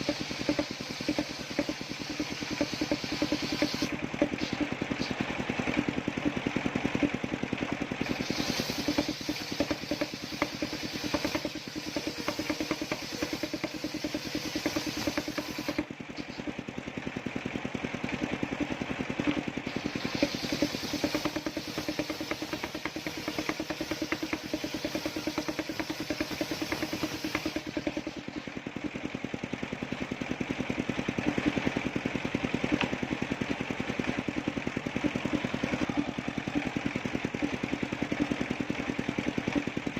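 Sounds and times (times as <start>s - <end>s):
sawmill engine running: 0.0s - 39.9s
saw blade hissing through wood: 8.0s - 16.4s, 19.6s - 28.0s.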